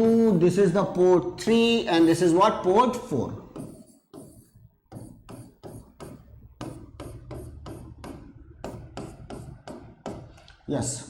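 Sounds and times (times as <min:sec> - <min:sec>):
marker writing on a board: 0:02.0 - 0:10.6.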